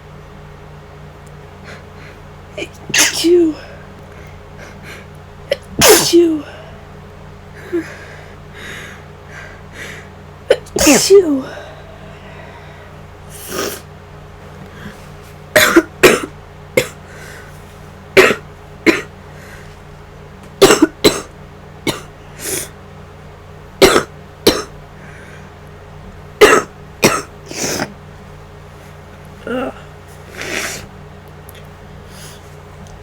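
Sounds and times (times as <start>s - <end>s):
woman coughing: 2.6s - 3.8s, 5.5s - 6.7s, 10.5s - 11.8s, 15.5s - 17.1s, 18.2s - 19.2s, 20.6s - 22.8s, 23.8s - 24.8s, 26.4s - 28.0s, 29.4s - 30.9s
soft breaths: 11.4s - 13.9s, 14.6s - 15.5s, 17.0s - 18.0s, 19.2s - 19.9s, 24.9s - 25.7s, 32.0s - 32.8s.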